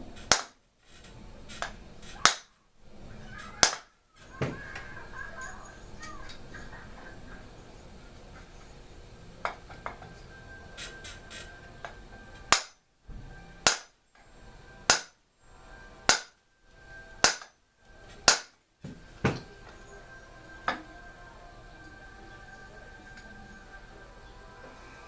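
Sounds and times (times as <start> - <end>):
hammer striking metal: 0.2 - 0.6, 1.6 - 2.5, 3.4 - 4.6, 10.8 - 14.0, 14.8 - 15.2, 16.0 - 16.4, 17.0 - 19.8.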